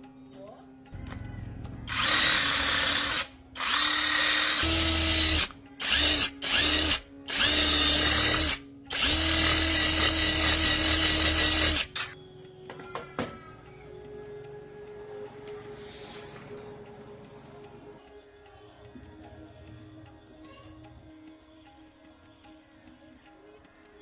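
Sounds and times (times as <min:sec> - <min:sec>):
loud grinding hiss: 0:01.9 - 0:12.2
power tool motor whining: 0:01.9 - 0:12.2.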